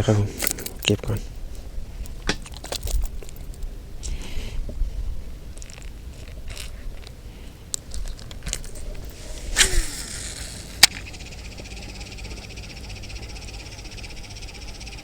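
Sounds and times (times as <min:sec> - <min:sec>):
short rustle: 0:08.0 - 0:10.9
insects chorus: 0:08.7 - 0:15.0.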